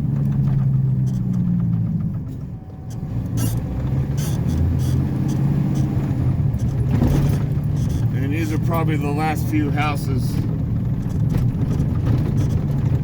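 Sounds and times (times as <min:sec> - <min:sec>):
truck engine running: 0:00.0 - 0:13.0
truck rattling over bumps: 0:00.0 - 0:13.0.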